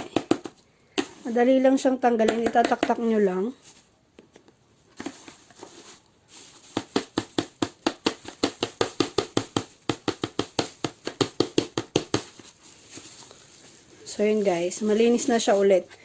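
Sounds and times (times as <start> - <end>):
dust bin being tapped: 6.7 - 12.3.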